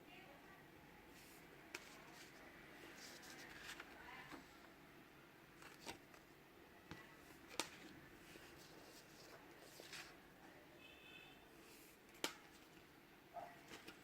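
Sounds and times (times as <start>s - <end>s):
paper and card rustling: 1.1s - 4.5s, 5.6s - 6.3s, 6.9s - 10.2s, 11.6s - 12.8s, 13.6s - 14.0s.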